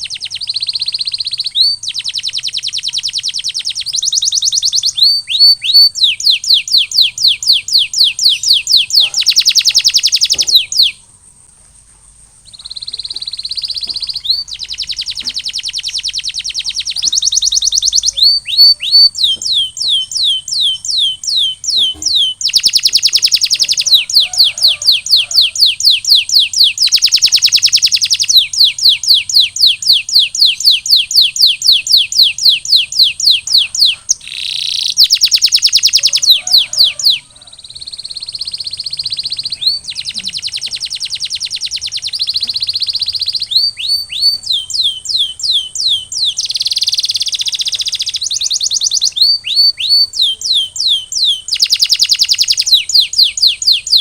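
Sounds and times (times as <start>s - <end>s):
canary singing trills: 0.0s - 54.0s.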